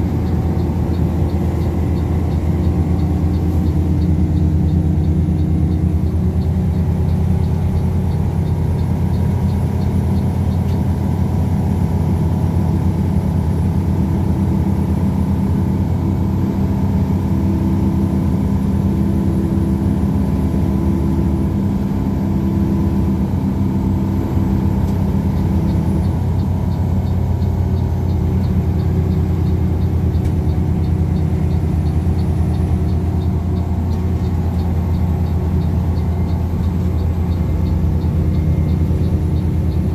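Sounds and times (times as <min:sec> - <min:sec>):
diesel engine hum inside coach: 0:00.0 - 0:39.9
faint rapid ticking: 0:00.1 - 0:10.8, 0:24.2 - 0:39.9.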